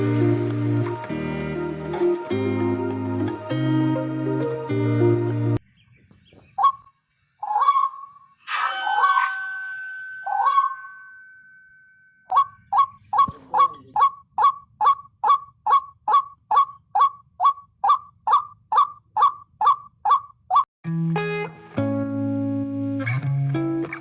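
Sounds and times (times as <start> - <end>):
waterhen calling: 6.6 - 9.6, 10.2 - 11.0, 12.3 - 20.7.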